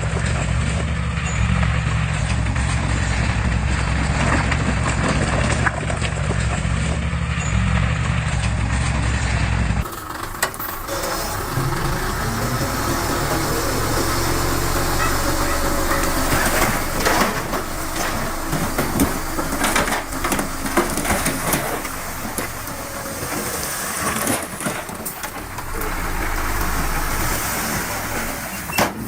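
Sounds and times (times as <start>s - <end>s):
heavy machine engine rumbling: 0.0s - 29.0s
metallic clanks and knocks: 10.1s - 23.4s.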